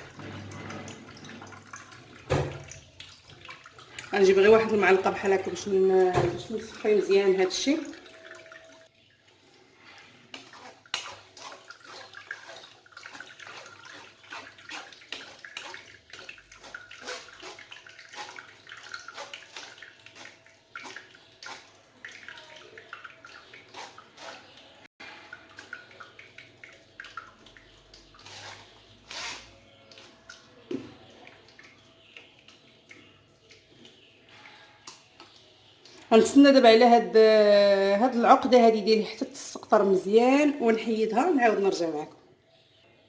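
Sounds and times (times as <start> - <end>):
spoon scraping in strainer: 9.9 - 25.7, 28.0 - 30.5.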